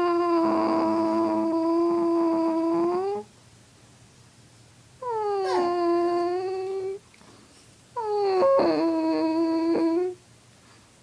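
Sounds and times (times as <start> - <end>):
dog howling: 0.0 - 3.2, 5.0 - 7.0, 8.0 - 10.2.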